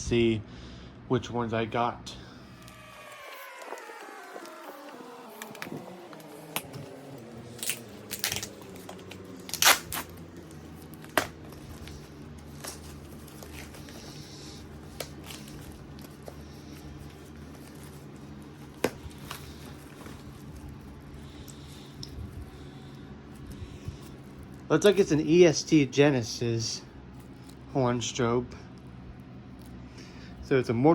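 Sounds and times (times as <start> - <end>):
steady low hum: 0.0 - 30.9
cardboard box tearing and crinkling: 2.7 - 20.7.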